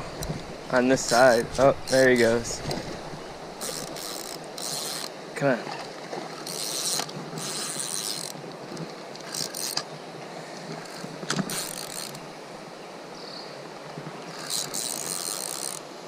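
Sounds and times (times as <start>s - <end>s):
fishing reel whirring: 3.6s - 5.1s, 6.3s - 9.8s, 10.7s - 12.2s, 14.3s - 15.9s.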